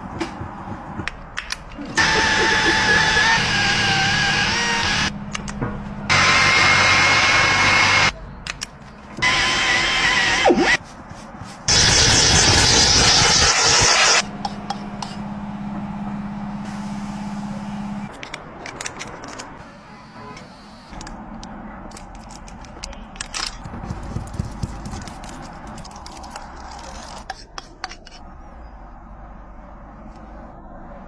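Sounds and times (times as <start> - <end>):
tools clicking and scraping on tyre: 0.0 - 2.1, 8.1 - 9.2, 18.1 - 19.6, 20.4 - 28.3.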